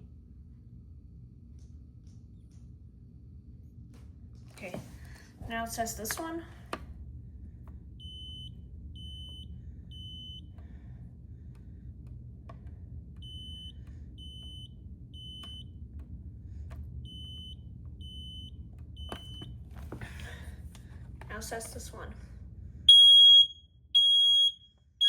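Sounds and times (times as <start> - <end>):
smoke alarm beeping: 8.0 - 10.5, 13.2 - 15.8, 17.0 - 19.6, 22.9 - 25.0.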